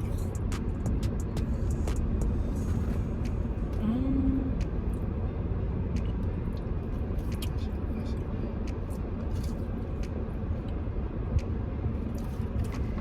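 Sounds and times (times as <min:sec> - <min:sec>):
car cabin rumble: 0:00.0 - 0:13.0
person humming: 0:03.8 - 0:04.6.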